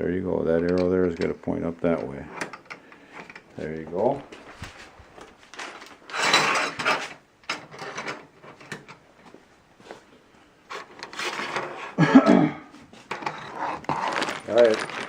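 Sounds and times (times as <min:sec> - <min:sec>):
scraping and rubbing of hardware: 0:04.4 - 0:09.0, 0:10.7 - 0:12.0, 0:13.0 - 0:15.0.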